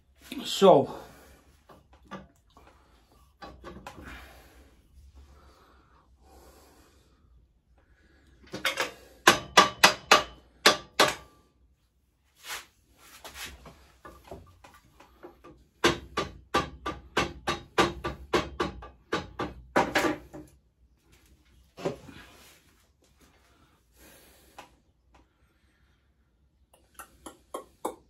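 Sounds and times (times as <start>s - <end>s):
sharp knocks of tools: 8.5s - 11.3s, 15.8s - 20.5s.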